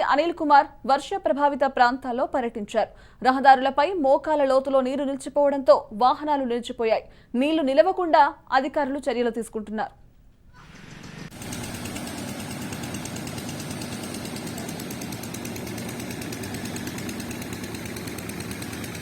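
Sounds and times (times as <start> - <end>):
engine running with fast rattle: 10.6 - 19.0.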